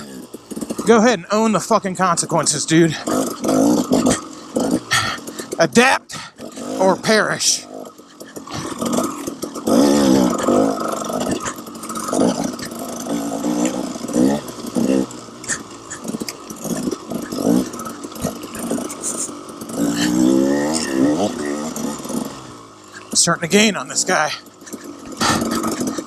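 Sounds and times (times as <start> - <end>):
dirt bike engine revving: 0.0 - 26.0.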